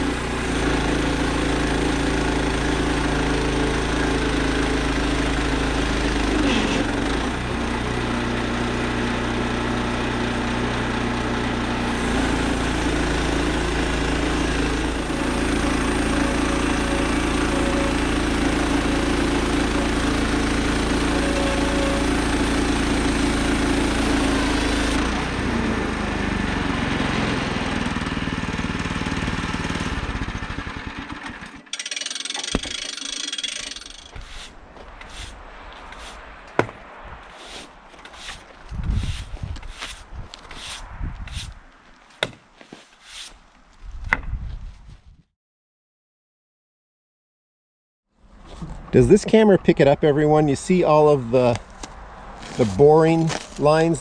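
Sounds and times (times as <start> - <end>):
bandsaw sawmill sawing log: 0.0 - 41.6, 52.4 - 54.0.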